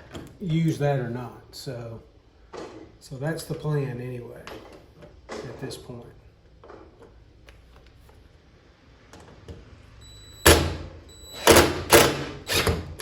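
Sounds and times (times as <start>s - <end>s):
power drill into sheet metal: 10.5s - 13.0s.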